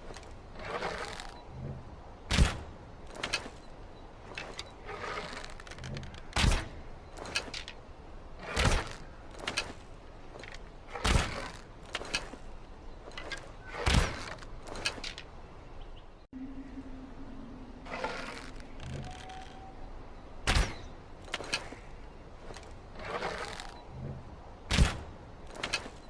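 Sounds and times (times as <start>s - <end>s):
arrow thunks: 2.3s - 3.4s, 6.3s - 7.5s, 11.0s - 11.6s, 20.4s - 21.7s, 24.7s - 25.8s.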